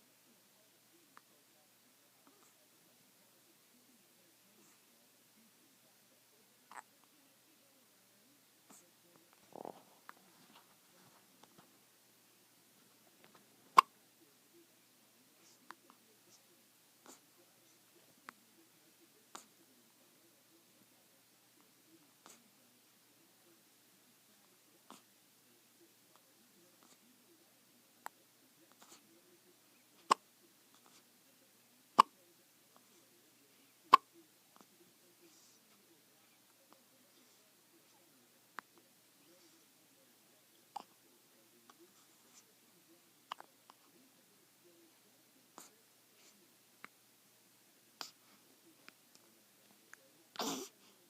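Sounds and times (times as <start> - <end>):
baby hiccuping: 6.7 - 6.9, 9.5 - 9.8, 13.7 - 13.9, 32.0 - 32.2, 33.9 - 34.1, 50.3 - 50.7.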